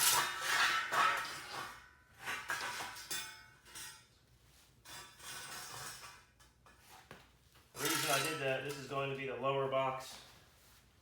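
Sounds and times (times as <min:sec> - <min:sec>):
steel bars clanking together: 0:07.8 - 0:08.8.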